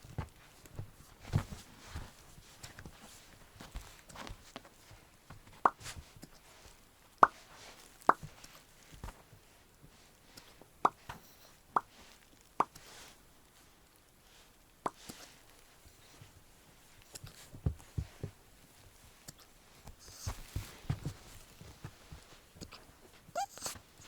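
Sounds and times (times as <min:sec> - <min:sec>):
puppy hiccupping: 0:23.4 - 0:23.8.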